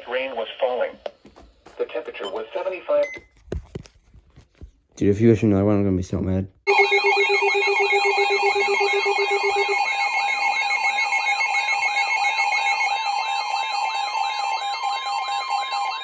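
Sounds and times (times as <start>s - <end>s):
warbling alert tone: 6.7s - 15.9s
high electronic alert tones: 6.7s - 16.0s
siren-like rising sweep: 6.7s - 16.0s.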